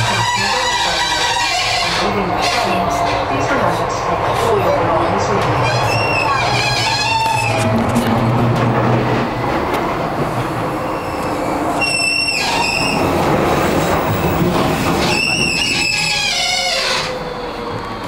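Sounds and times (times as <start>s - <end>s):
train rumbling on track: 0.0s - 18.0s
train wheels squealing: 5.6s - 7.6s, 10.9s - 13.0s, 14.9s - 18.0s.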